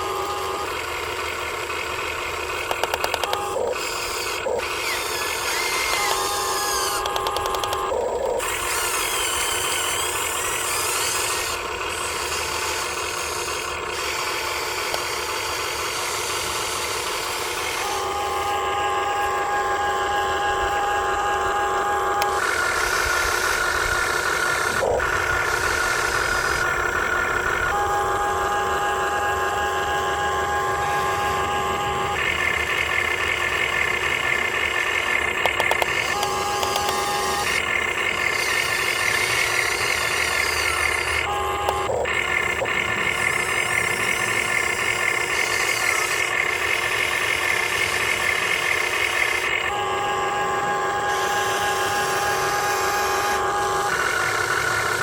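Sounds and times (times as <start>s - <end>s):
electric motors and gearboxes whining: 0.0s - 55.0s
sharp clicks: 2.5s - 10.3s, 34.4s - 37.7s.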